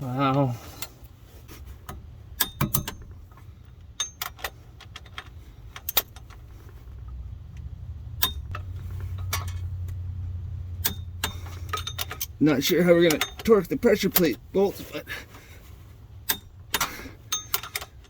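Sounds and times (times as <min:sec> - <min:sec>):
low rumble: 0:06.4 - 0:12.4
metallic clinks of tools: 0:10.8 - 0:12.4, 0:13.0 - 0:13.6, 0:16.3 - 0:18.0.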